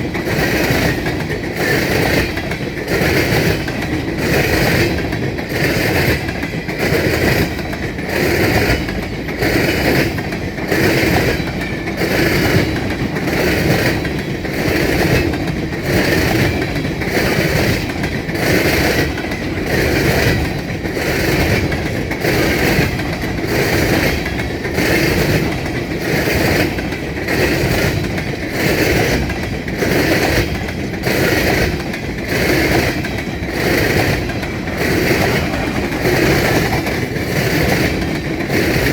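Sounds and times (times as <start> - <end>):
train wheels clattering over rails: 0.0 - 38.9.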